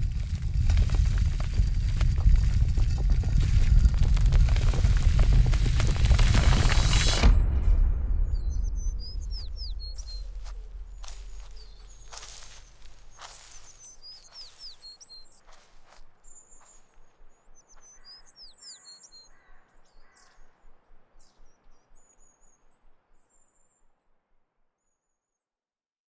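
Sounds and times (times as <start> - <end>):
small birds chirping: 8.7 - 24.0.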